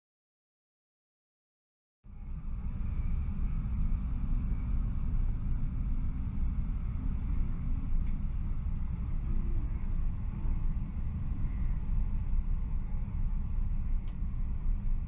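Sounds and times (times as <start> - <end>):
airplane cabin rumble: 2.1 - 8.2.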